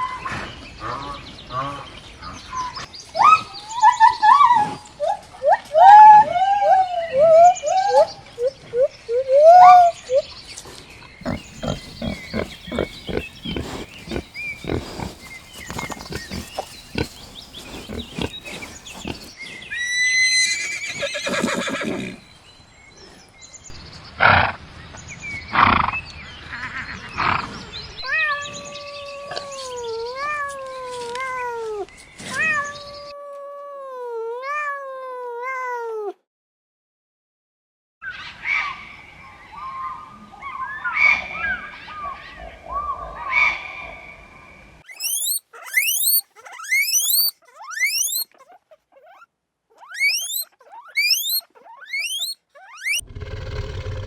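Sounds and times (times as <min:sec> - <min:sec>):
farm animal calls: 0:11.2 - 0:19.4, 0:44.9 - 0:54.0.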